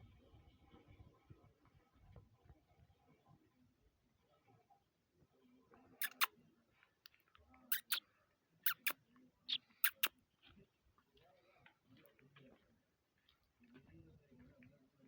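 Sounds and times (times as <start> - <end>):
small bird chirping: 6.0 - 6.3, 7.7 - 8.0, 8.6 - 10.1.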